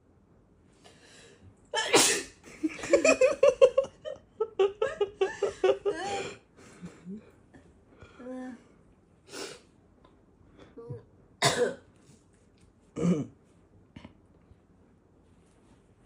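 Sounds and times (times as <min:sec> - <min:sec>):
person laughing: 0:02.5 - 0:07.3.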